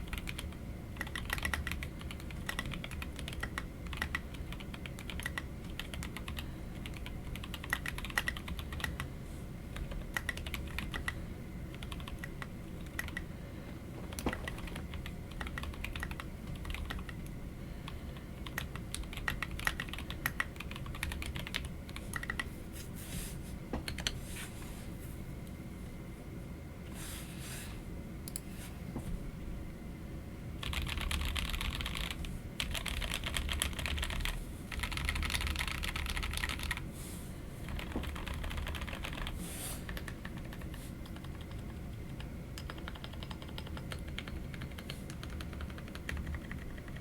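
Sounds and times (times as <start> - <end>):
mechanical keyboard typing: 0.0 - 9.1, 9.8 - 13.3, 14.1 - 17.2, 18.4 - 22.5, 30.6 - 36.8, 37.7 - 47.0.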